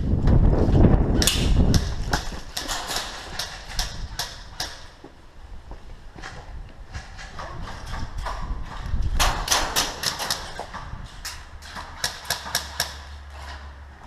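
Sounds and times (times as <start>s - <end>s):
footsteps on hard ground: 4.0s - 9.3s.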